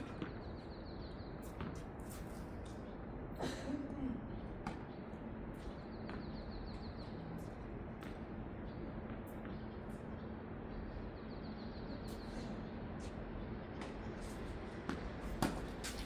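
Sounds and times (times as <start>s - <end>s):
steady background hum: 0.0s - 16.0s
tennis balls struck by racquets: 14.9s - 16.0s.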